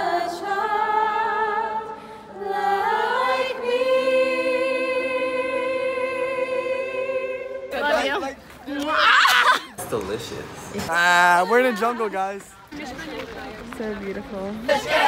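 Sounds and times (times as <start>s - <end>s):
choir singing sustained chords: 0.0s - 7.8s.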